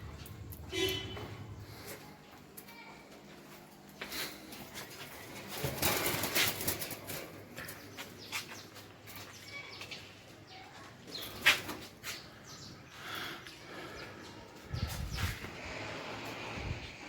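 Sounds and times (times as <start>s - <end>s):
birds flapping wings: 5.0s - 7.5s.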